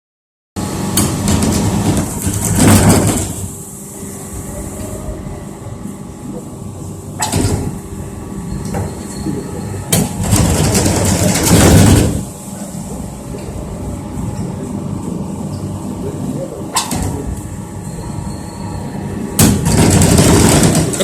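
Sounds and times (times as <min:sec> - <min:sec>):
dryer drive mechanism humming: 0:00.6 - 0:21.0
sharp knocks: 0:19.4 - 0:21.0.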